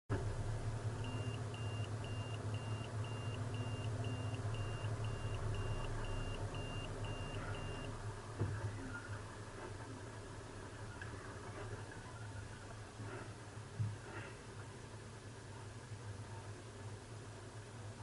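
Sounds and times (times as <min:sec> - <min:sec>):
low engine hum: 0:00.1 - 0:13.2
electronic warning beeper: 0:01.0 - 0:08.0.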